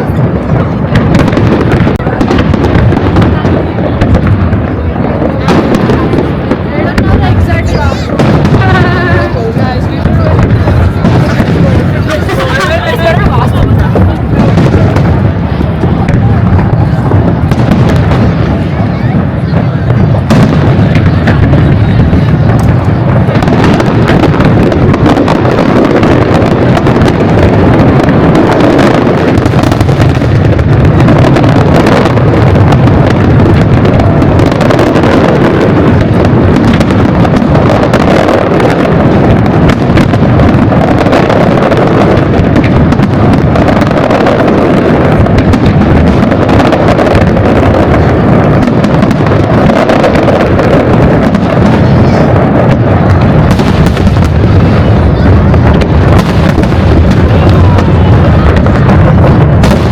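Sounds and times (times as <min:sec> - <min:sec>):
fireworks booming and crackling: 0:00.0 - 0:59.9.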